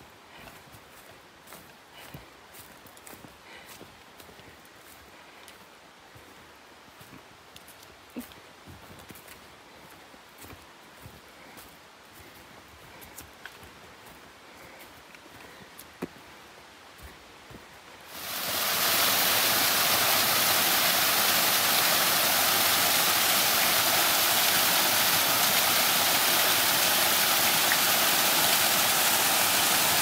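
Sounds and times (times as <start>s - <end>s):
waterfall rushing: 18.1s - 30.0s.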